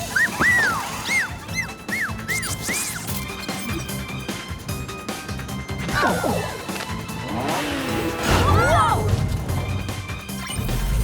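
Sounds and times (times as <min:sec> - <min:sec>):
whistle-like effects: 0:00.0 - 0:04.0
cartoon background music: 0:00.0 - 0:11.0.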